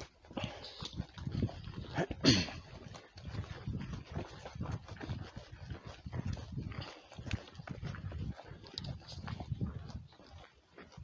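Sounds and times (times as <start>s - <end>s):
footsteps on a trail: 0.0s - 11.0s.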